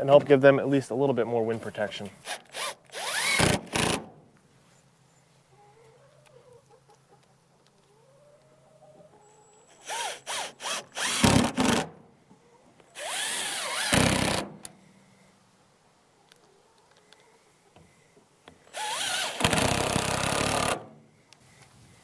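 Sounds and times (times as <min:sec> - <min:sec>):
power drill driving screws: 0:02.2 - 0:04.1, 0:09.6 - 0:11.9, 0:13.0 - 0:14.5, 0:18.7 - 0:20.8
faint chicken clucking: 0:04.7 - 0:09.7, 0:12.2 - 0:12.9, 0:16.0 - 0:18.1.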